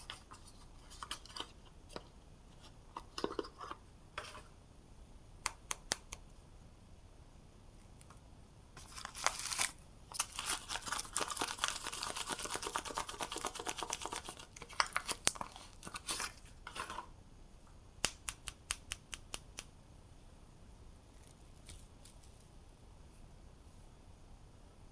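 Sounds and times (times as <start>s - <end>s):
packaging tearing and crinkling: 8.8s - 12.7s.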